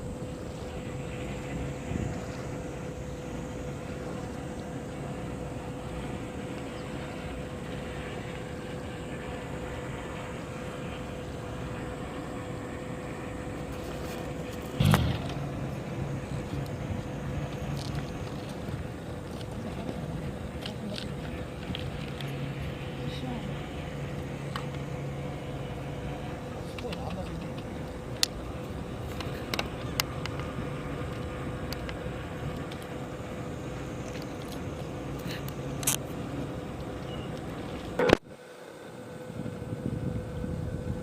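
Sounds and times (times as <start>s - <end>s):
engine humming: 0.0s - 41.0s.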